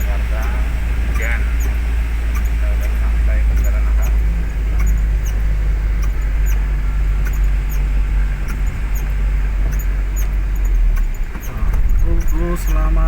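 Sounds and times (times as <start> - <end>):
vehicle engine and road rumble: 0.0 - 13.0
faint high ticks: 4.8 - 5.4, 6.0 - 9.1.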